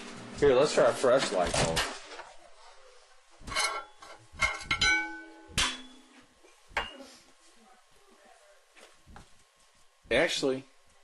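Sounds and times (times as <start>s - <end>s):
hard objects clinking and knocking: 3.4s - 6.1s.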